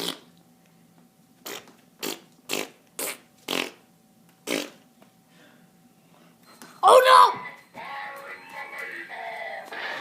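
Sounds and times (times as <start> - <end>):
short breathy farts: 0.0 - 0.3, 1.4 - 3.8, 4.4 - 4.8.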